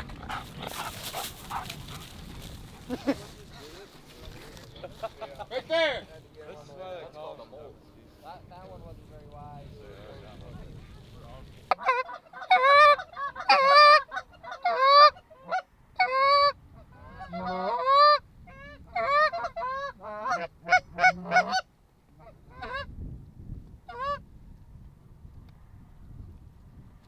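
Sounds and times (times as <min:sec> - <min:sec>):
geese honking: 0:11.7 - 0:16.5, 0:18.9 - 0:22.8.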